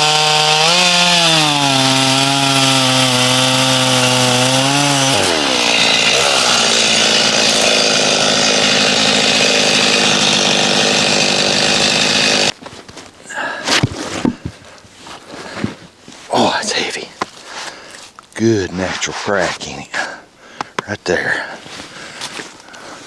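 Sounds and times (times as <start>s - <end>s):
chainsaw cutting wood: 0.0s - 12.6s.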